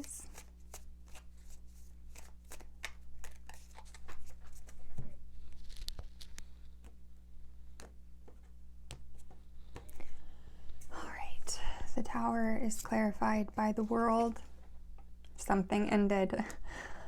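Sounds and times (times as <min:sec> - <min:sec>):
cards being shuffled: 0:00.0 - 0:07.0, 0:07.6 - 0:10.1
steady low hum: 0:04.3 - 0:17.0.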